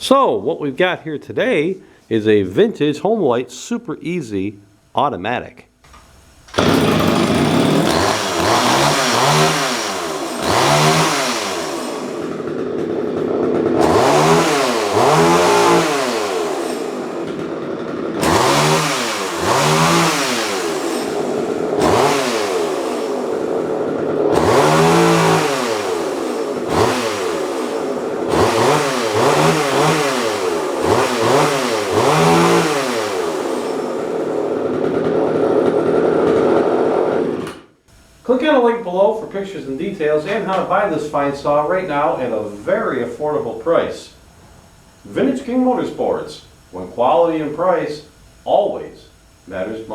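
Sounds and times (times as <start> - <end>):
chainsaw revving: 5.9 - 37.6, 39.8 - 43.6.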